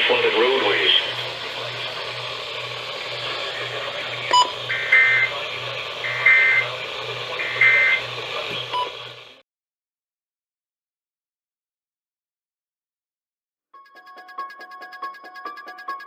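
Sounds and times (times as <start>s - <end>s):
low pulsing hum: 0.0s - 9.4s
radio static hiss: 0.0s - 9.4s
warbling digital bursts: 4.2s - 8.1s.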